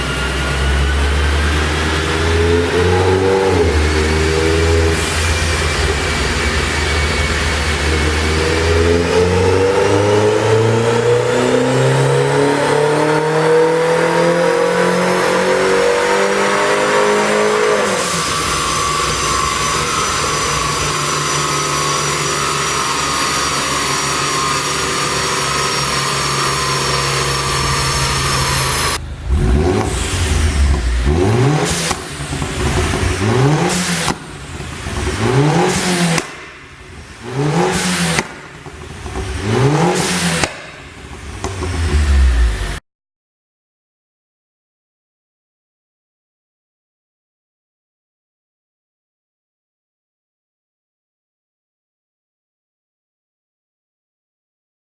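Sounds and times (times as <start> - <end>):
car engine revving on dyno: 0.0 - 42.8
engine run-down whine: 0.0 - 42.8
exhaust pops and cracks: 29.2 - 42.0.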